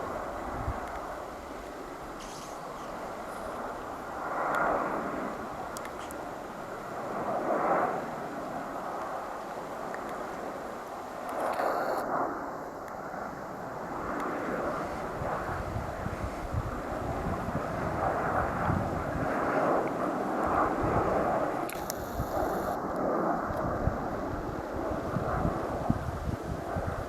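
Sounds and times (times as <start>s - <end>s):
wind buffeting microphone: 0.0s - 6.1s, 13.9s - 27.0s
airliner engine rushing: 0.0s - 27.0s.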